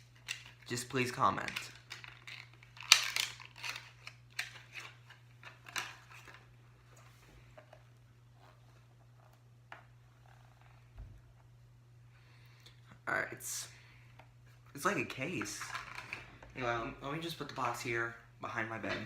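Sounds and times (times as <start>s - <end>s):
packaging crinkling: 1.4s - 6.5s.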